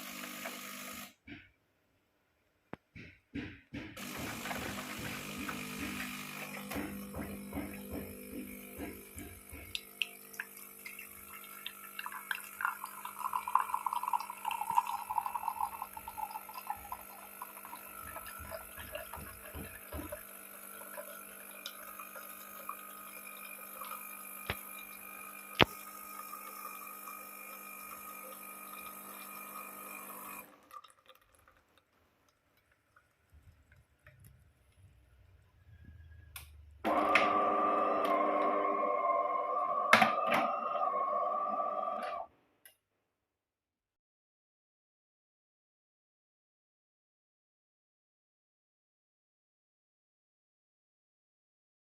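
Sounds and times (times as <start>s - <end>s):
coffee machine pump humming: 0.0s - 1.2s, 4.0s - 31.6s, 36.8s - 42.3s
coffee pouring and dripping: 4.0s - 35.8s.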